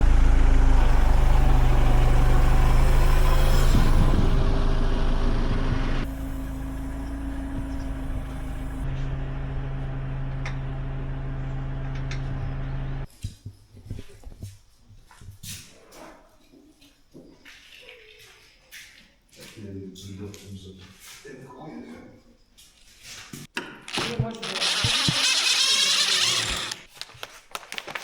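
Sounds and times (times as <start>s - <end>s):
vehicle engine idling: 0.0s - 13.1s.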